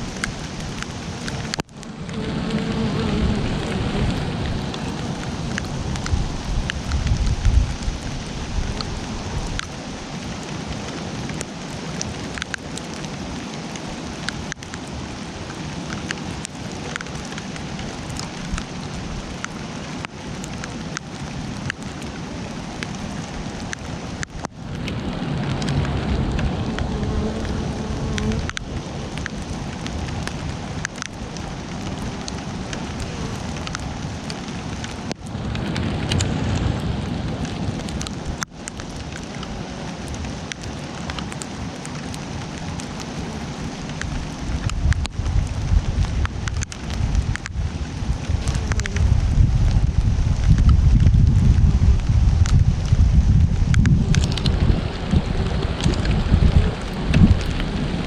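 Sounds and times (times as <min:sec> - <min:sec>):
steady rain falling: 0:00.0 - 0:58.0
low rumble: 0:24.6 - 0:28.9, 0:35.2 - 0:38.5, 0:44.5 - 0:58.0.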